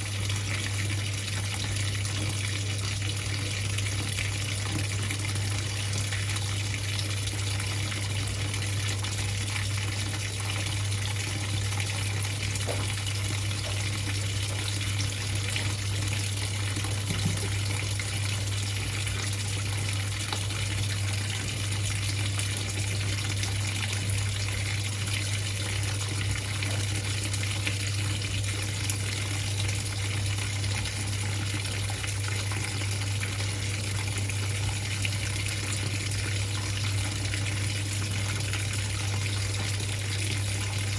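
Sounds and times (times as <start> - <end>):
water gushing into washing machine: 0.0 - 40.9.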